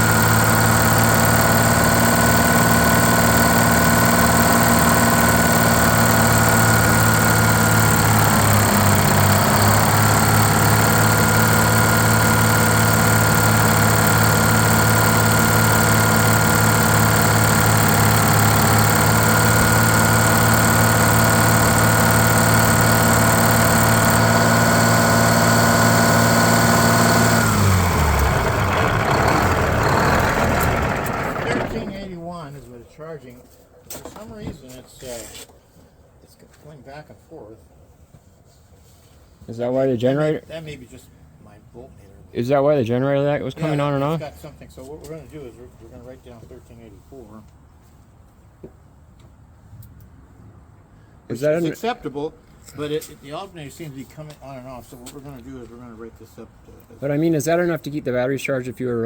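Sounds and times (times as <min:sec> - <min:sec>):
bus diesel engine idling: 0:00.0 - 0:32.1.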